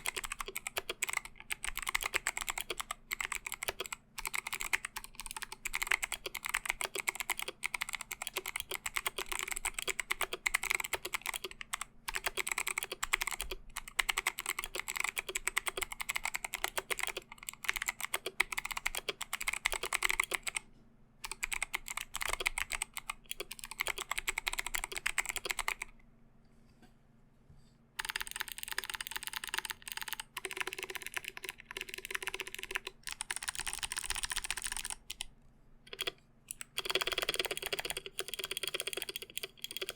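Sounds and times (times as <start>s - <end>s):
mechanical keyboard typing: 0.0s - 20.6s, 21.2s - 25.9s, 28.0s - 35.3s, 35.9s - 39.9s.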